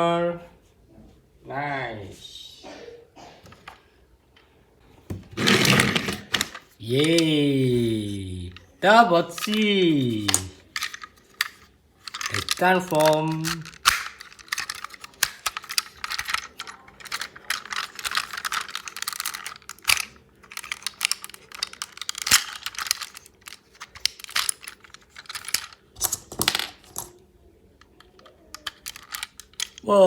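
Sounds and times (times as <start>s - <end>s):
plastic toy parts clicking and snapping: 5.5s - 8.1s, 9.2s - 27.2s, 27.8s - 29.9s.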